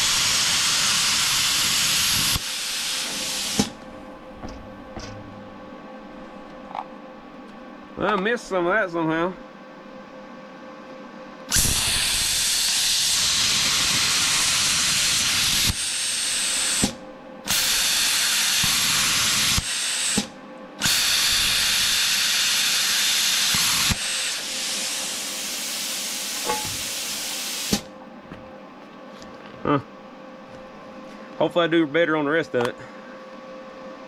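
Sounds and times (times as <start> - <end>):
plasma cutter hissing: 0.0 - 3.8, 11.5 - 27.8.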